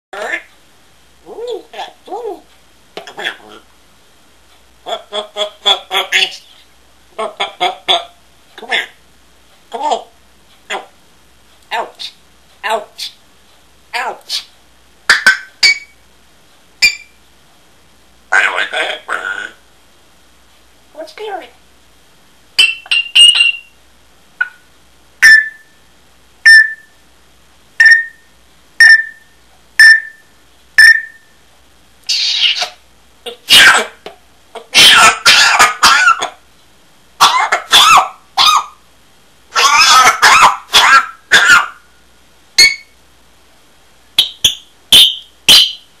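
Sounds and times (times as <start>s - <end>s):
parrot whistled chirps: 15.1s - 16.0s, 16.8s - 17.2s, 22.6s - 23.8s, 25.2s - 25.8s, 26.4s - 27.0s, 27.8s - 31.4s, 32.1s - 32.8s, 42.6s - 43.0s, 44.2s - 45.9s
parrot mimicking rasping coughs: 34.7s - 36.4s, 37.2s - 38.1s, 39.6s - 41.8s.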